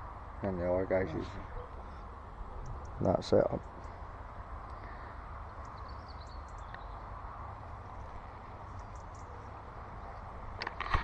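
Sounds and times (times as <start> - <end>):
faint bird chirps: 4.7 - 7.1.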